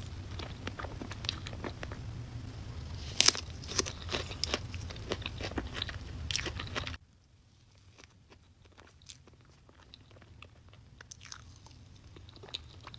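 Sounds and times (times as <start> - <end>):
low background hum: 0.0 - 12.9
chewing and biting: 2.9 - 7.0, 8.0 - 12.9.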